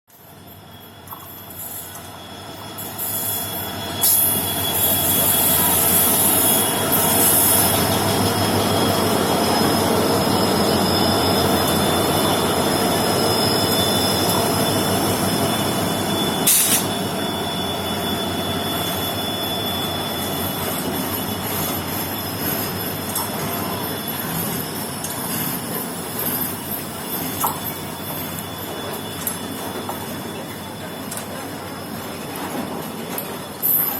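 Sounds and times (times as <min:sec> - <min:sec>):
train wagons rolling on track: 0:00.1 - 0:33.9
high-pitched wheel squeal: 0:00.8 - 0:32.0.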